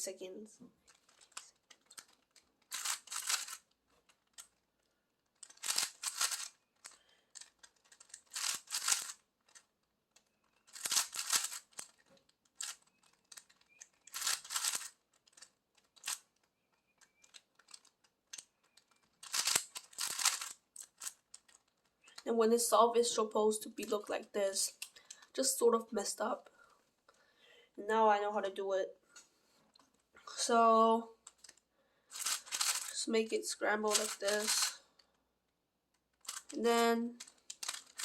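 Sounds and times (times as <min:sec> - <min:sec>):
plastic puzzle cube clicking: 0:00.9 - 0:22.2, 0:31.2 - 0:33.0, 0:33.9 - 0:35.1, 0:36.1 - 0:38.0.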